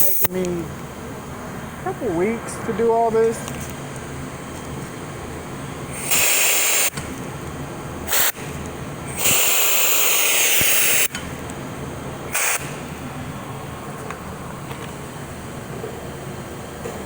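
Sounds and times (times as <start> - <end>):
low shop hum: 0.0 - 17.0
compressed air blow gun hissing: 5.9 - 6.9, 8.1 - 8.4, 9.1 - 11.1, 12.3 - 12.9.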